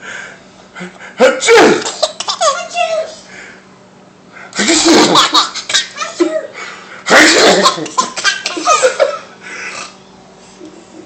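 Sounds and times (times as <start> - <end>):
baby laughing: 1.9 - 2.8, 4.6 - 6.5, 7.1 - 9.2.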